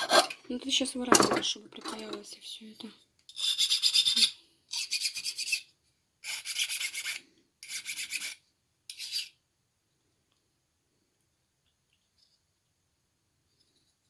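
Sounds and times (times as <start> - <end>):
metal file rasping on metal: 3.3 - 9.4.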